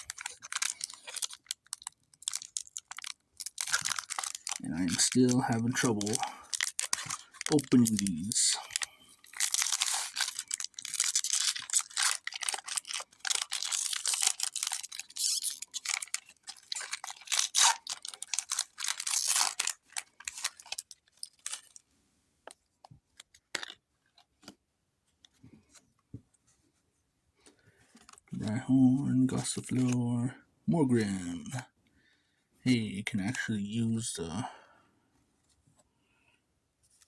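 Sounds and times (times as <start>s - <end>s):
foil wrapper crinkling and tearing: 0.0s - 21.8s.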